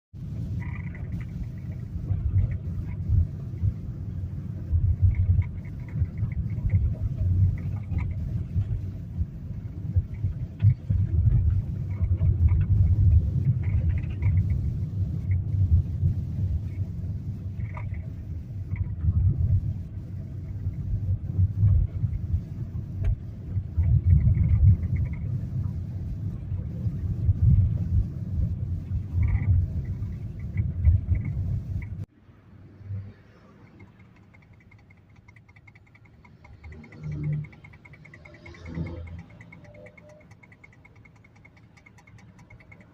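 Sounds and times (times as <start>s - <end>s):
low uneven steering rumble: 0.2s - 32.1s.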